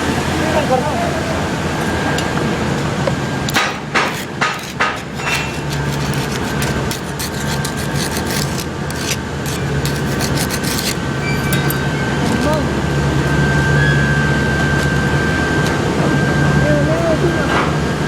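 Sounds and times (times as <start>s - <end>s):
workshop hum: 0.0s - 18.0s
hammer striking metal: 11.3s - 12.0s.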